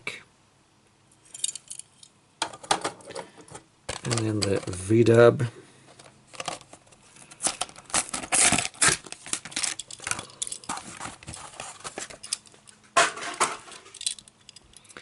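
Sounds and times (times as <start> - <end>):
plastic crackling and snaps: 3.9 - 4.9, 6.0 - 11.4
plastic packaging tearing: 6.3 - 12.0.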